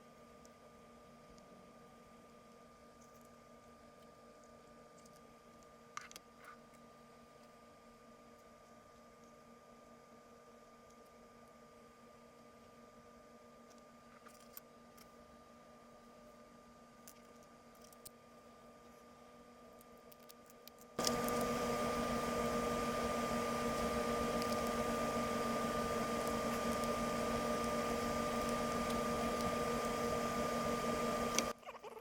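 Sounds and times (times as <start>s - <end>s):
small electric motor humming: 21.0s - 32.0s.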